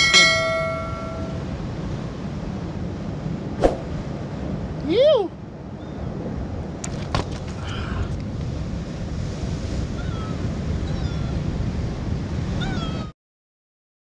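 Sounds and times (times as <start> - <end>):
sea surf: 0.0 - 5.0, 7.8 - 13.1
wind buffeting microphone: 0.0 - 13.1.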